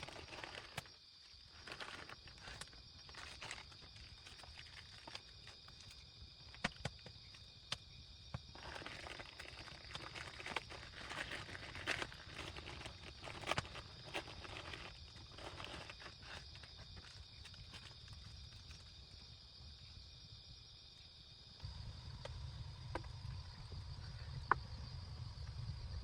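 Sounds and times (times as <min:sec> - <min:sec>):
dry leaves rustling and crackling: 0:08.6 - 0:16.4
steady high whine: 0:21.6 - 0:26.0.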